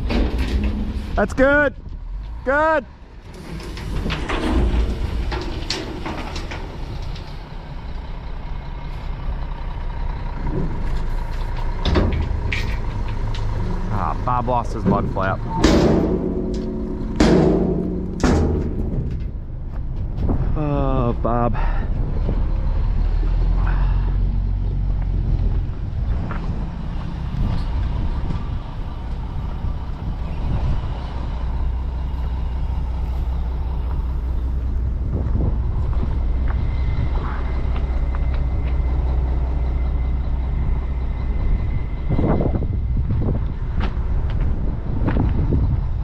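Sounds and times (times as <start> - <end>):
knocks and clanks: 0.0 - 1.2, 3.2 - 7.5, 10.4 - 20.6
diesel engine running: 0.0 - 46.0.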